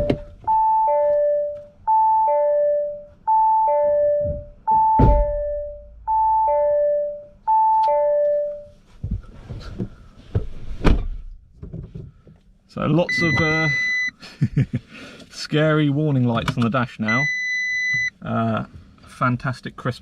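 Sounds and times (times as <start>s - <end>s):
two-note warning chime: 0.0s - 8.7s.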